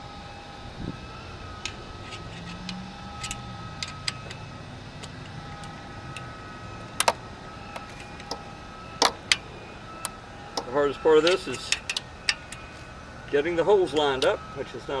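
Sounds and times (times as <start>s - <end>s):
metal pipe parts clicking and knocking: 1.6s - 4.4s, 10.6s - 12.6s.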